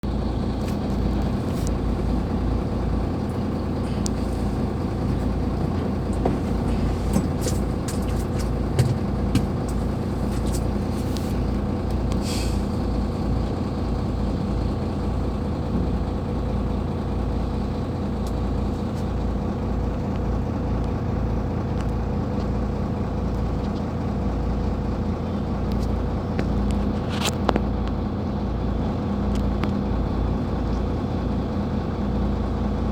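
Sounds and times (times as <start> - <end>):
excavator diesel engine running: 0.0 - 32.9
metal clanks and knocks: 3.9 - 10.6.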